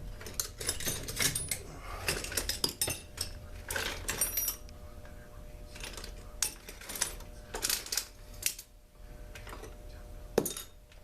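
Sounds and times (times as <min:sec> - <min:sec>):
small metal parts clinking: 0:00.2 - 0:04.6, 0:05.8 - 0:08.7.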